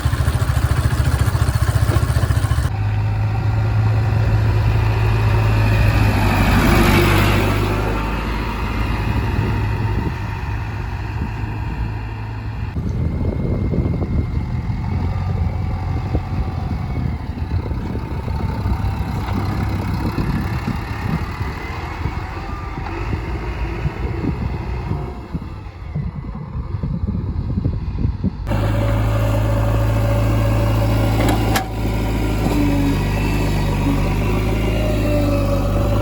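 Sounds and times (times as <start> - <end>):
diesel engine rumbling: 0.0 - 36.0.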